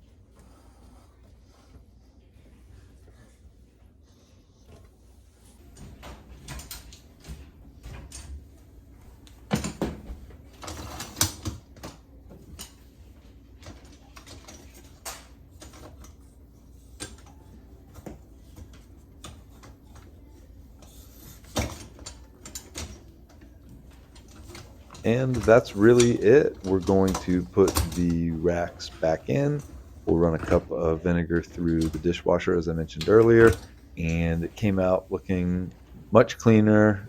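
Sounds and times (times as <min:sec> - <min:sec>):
plastic parts clicking and knocking: 0:20.8 - 0:30.6.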